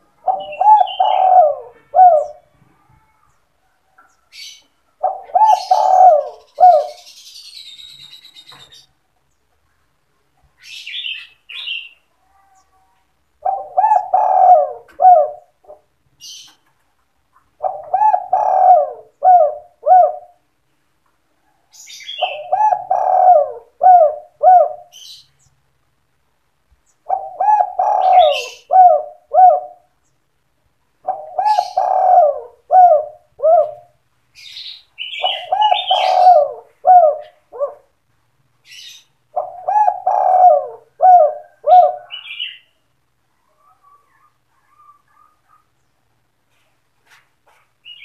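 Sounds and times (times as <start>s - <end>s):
dove cooing: 0.0s - 7.2s, 13.4s - 15.9s, 17.5s - 20.4s, 22.1s - 25.2s, 27.0s - 29.9s, 31.0s - 34.0s, 35.0s - 37.9s, 38.7s - 42.7s
higher bird chirps: 0.2s - 3.5s, 31.0s - 37.5s.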